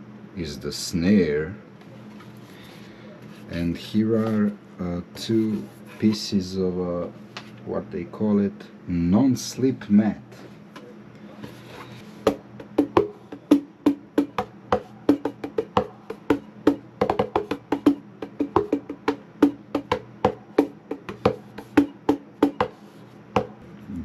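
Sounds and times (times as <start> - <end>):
cajon taps and slaps: 12.3 - 22.8, 23.4 - 23.6.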